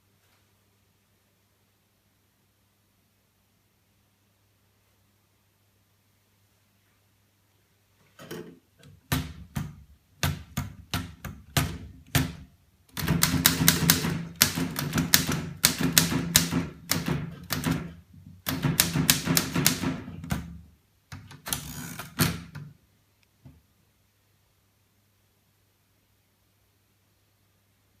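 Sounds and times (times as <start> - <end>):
manual typewriter keystrokes: 8.8 - 22.7
typewriter rasping: 9.1 - 20.6, 21.2 - 22.6.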